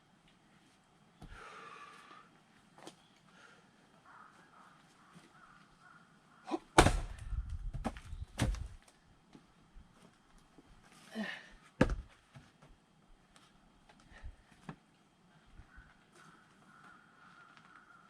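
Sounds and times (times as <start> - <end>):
breath: 1.3 - 2.3, 3.3 - 3.7
axe splitting log: 6.6 - 8.7.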